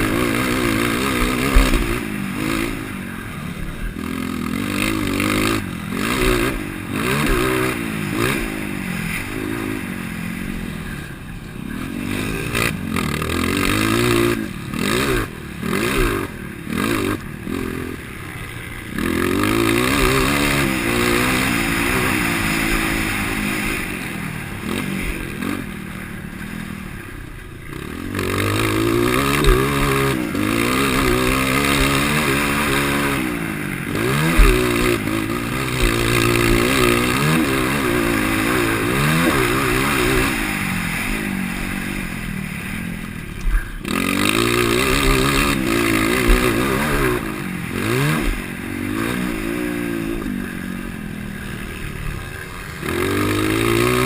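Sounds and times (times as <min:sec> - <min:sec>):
motocross bike engine revving: 0:00.0 - 0:54.0.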